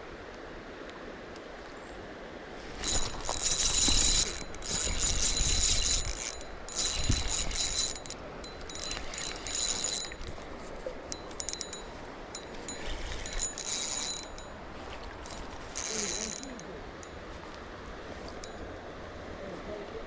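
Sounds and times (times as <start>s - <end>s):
fishing reel ratcheting and whirring: 2.8s - 14.6s, 15.2s - 17.2s.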